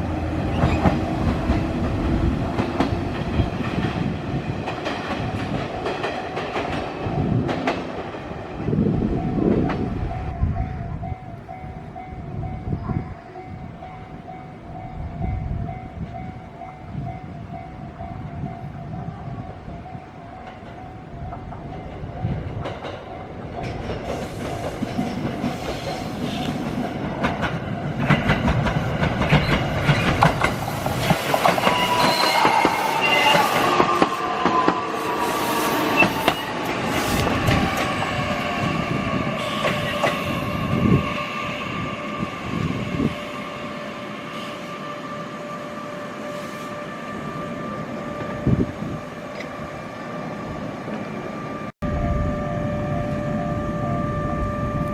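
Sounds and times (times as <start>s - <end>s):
train humming with held tones: 0.0s - 54.9s
train wheels clicking over rail joints: 0.4s - 8.3s, 20.4s - 35.2s, 35.8s - 40.8s
train brakes whining and squealing: 23.7s - 26.8s, 29.2s - 54.9s.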